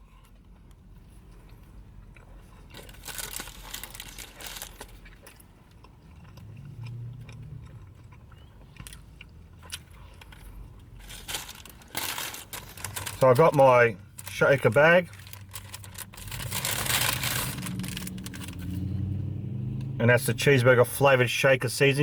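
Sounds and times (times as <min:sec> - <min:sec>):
person chewing burger: 0:00.0 - 0:13.2.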